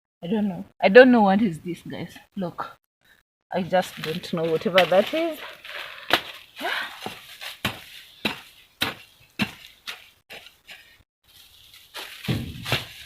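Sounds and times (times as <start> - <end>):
digging tool chopping into soil: 12.2 - 13.0.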